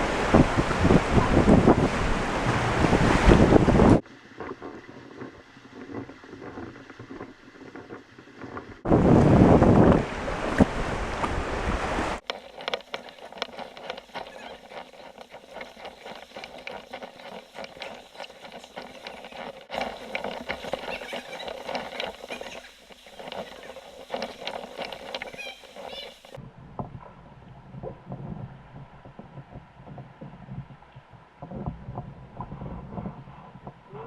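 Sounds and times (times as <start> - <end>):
wind buffeting microphone: 0.0 - 22.6, 23.2 - 34.0
water splashing and dripping: 0.0 - 26.4.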